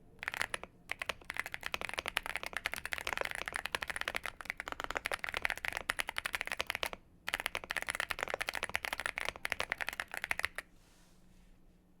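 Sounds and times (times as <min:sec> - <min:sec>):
fast typing on mechanical keyboard: 0:00.2 - 0:10.6.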